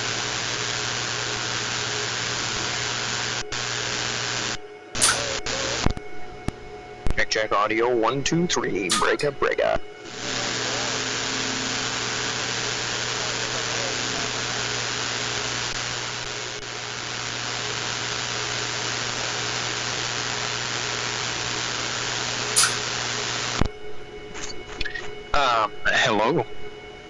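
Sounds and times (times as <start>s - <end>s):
radio static hiss: 0.0s - 26.8s
low hum: 4.5s - 17.1s, 22.4s - 27.0s.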